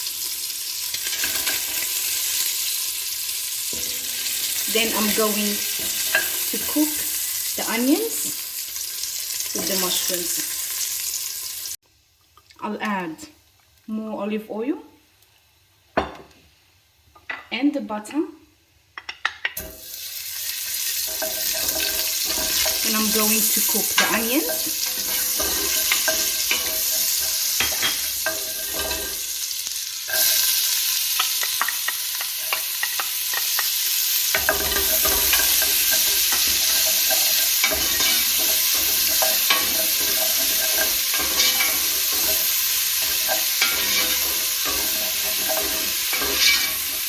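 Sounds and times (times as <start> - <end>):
onions sizzling in a pan: 0.0 - 11.8, 19.5 - 47.0
utensil scraping a pan: 19.6 - 29.4, 30.1 - 47.0.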